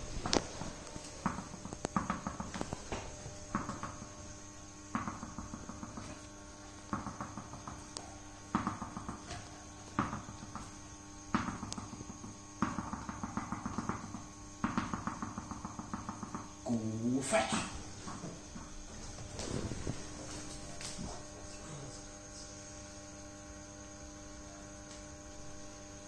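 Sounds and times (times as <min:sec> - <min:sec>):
puppy paws pattering on hard floor: 0:18.0 - 0:21.4.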